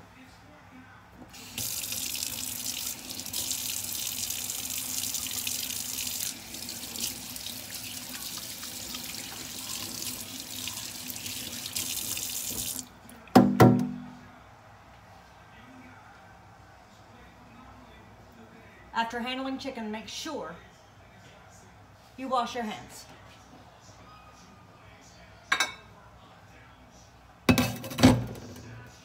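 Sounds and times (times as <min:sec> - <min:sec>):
faucet running into sink: 0:01.4 - 0:12.9
sharp knocks: 0:13.4 - 0:14.1.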